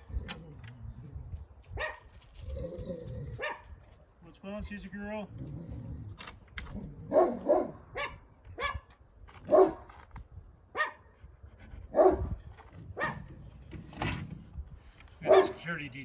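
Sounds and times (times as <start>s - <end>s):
dog barking: 1.8s - 2.1s, 3.4s - 3.7s, 7.1s - 8.9s, 9.5s - 9.9s, 10.8s - 11.1s, 11.9s - 12.3s, 13.0s - 13.3s, 15.2s - 15.6s.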